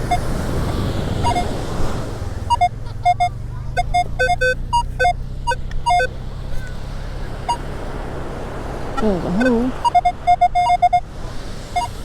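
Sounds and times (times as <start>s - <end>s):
metal detector beeps: 1.2s - 1.5s, 2.5s - 6.1s, 9.0s - 11.1s, 11.8s - 12.0s.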